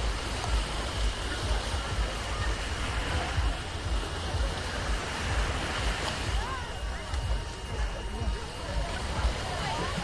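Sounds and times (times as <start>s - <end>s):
surf washing: 0.0s - 10.0s
wind rumbling on microphone: 0.0s - 10.0s
indistinct voices of people: 1.2s - 10.0s.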